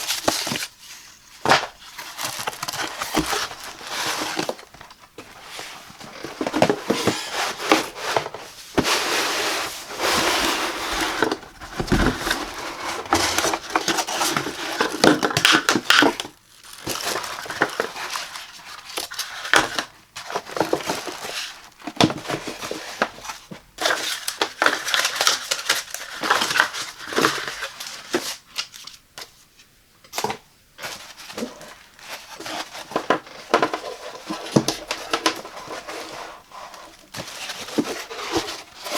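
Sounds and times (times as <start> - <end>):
packing material crinkling: 1.9 - 19.2
scraping: 5.2 - 13.8.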